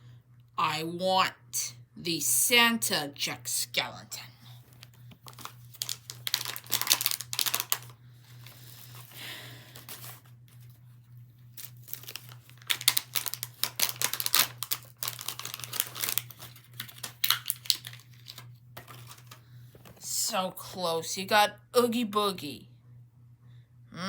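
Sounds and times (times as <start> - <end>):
packaging crinkling and tearing: 4.6 - 10.8, 11.5 - 20.0.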